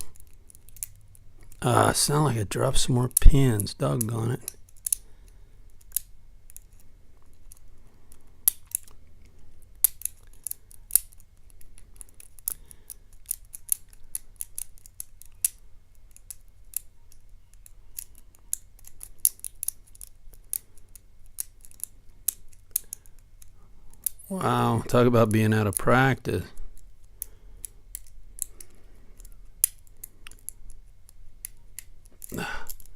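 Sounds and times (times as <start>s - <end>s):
lock pick clicking and scraping: 5.7s - 24.2s, 26.8s - 32.9s.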